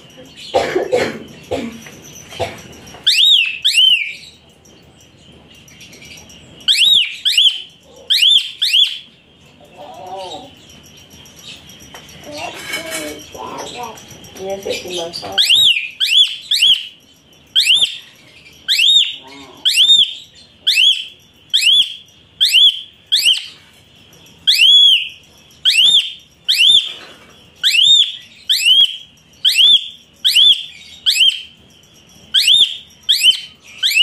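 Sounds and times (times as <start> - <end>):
bird calling with whistled notes: 1.2 - 4.4, 5.5 - 34.0.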